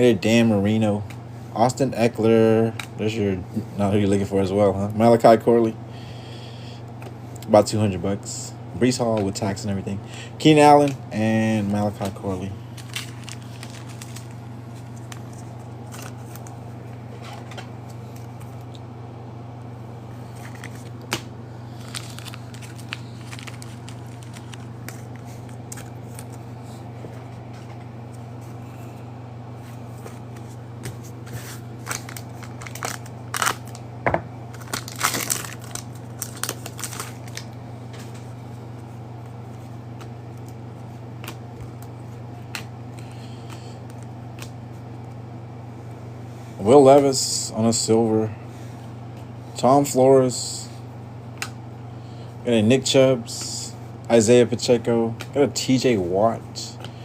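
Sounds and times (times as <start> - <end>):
steady low hum: 0.0 - 57.0
foil wrapper tearing and crinkling: 12.7 - 14.4, 21.7 - 26.4, 31.8 - 33.8, 34.5 - 37.5.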